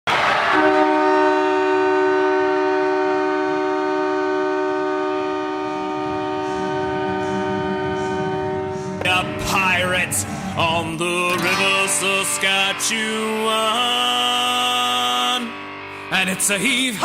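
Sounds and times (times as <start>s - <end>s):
goal horn chord blast: 0.5s - 10.7s.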